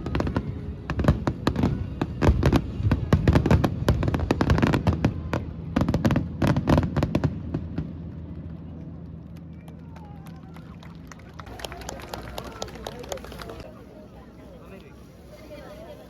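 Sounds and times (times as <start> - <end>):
fireworks bangs and crackles: 0.0 - 9.7.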